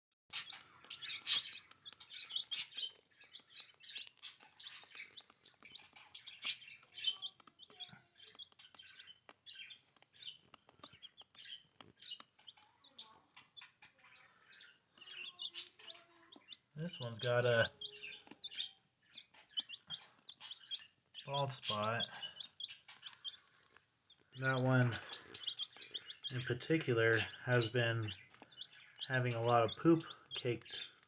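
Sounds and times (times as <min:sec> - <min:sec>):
chicks peeping: 0:00.3 - 0:31.0.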